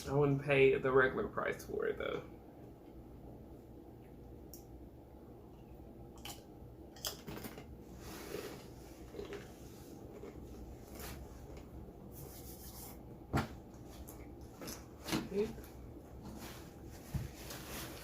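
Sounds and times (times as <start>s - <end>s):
crunching while eating: 6.0s - 11.9s, 13.7s - 15.8s.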